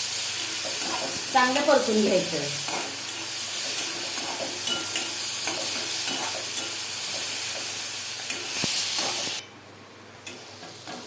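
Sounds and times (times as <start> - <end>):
food sizzling in hot oil: 0.0 - 9.4.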